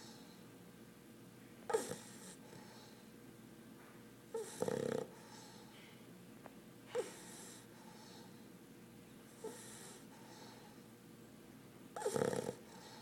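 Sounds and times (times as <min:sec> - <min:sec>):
puppy snoring: 0:01.7 - 0:02.9, 0:04.3 - 0:05.6, 0:06.9 - 0:08.4, 0:09.3 - 0:10.8, 0:12.0 - 0:13.0.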